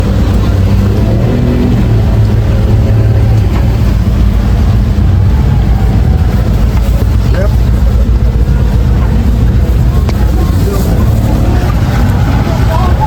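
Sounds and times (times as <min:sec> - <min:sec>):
outboard motor drone: 0:00.0 - 0:13.0
rushing water noise: 0:00.0 - 0:13.0.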